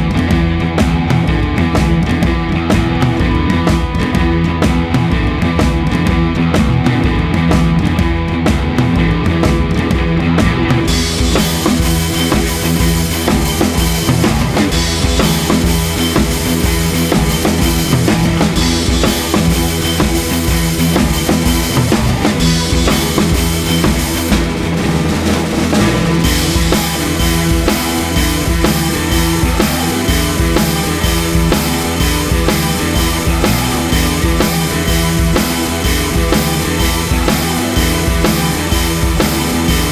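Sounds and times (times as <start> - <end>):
drum kit beat: 0.0 - 39.9
rock backing music: 0.0 - 39.9
cymbals: 10.9 - 39.9.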